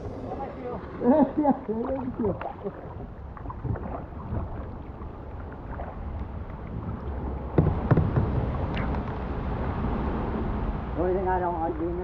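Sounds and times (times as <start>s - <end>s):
wind on microphone: 0.0s - 11.0s
knocks: 7.6s - 8.4s.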